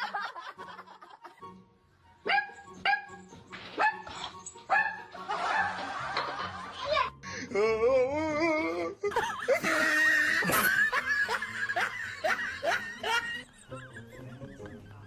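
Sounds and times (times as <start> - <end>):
person laughing hard: 8.5 - 14.8.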